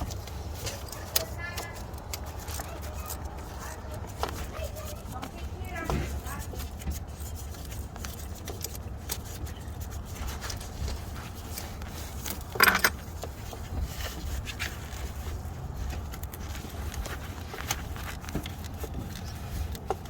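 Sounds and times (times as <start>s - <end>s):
metal tools clinking and scraping: 11.4s - 13.6s.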